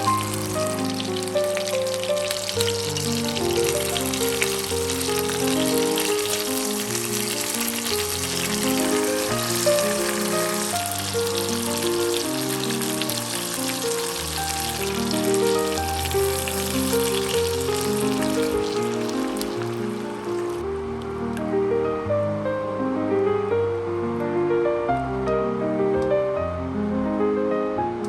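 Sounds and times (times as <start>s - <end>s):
food sizzling in a pan: 0.0s - 20.6s
background music: 0.0s - 23.8s.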